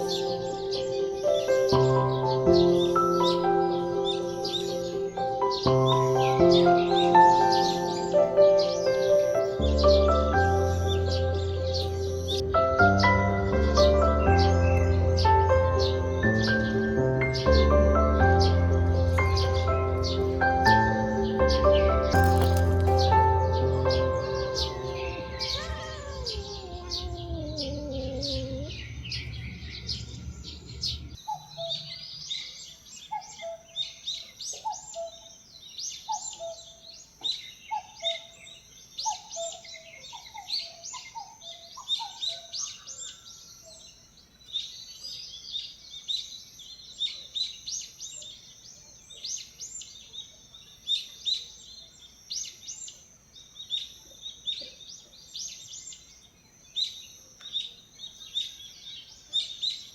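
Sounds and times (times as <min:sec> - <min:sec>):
background music: 0:00.0 - 0:30.1
birds chirping: 0:00.0 - 0:59.9.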